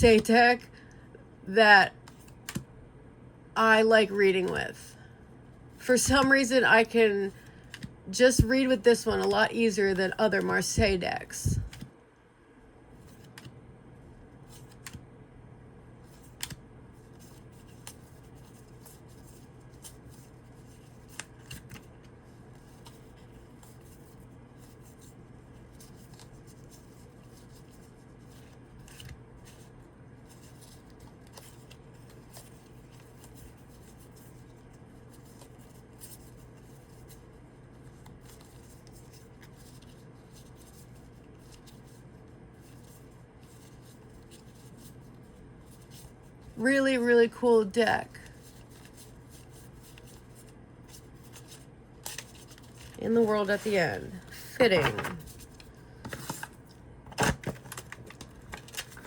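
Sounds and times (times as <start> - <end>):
steady low hum: 0.0 - 59.0
cards clicking and snapping: 16.2 - 16.6.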